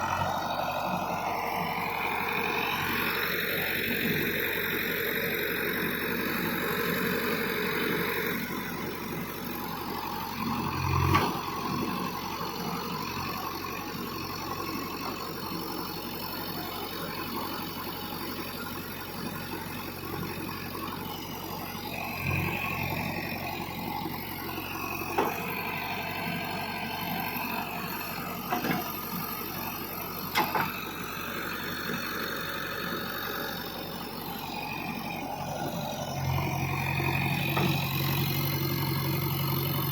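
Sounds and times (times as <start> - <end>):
diesel engine running: 0.0 - 39.9
sharp clunks and knocks: 25.2 - 25.5, 28.5 - 29.0, 30.3 - 30.8, 37.5 - 37.8.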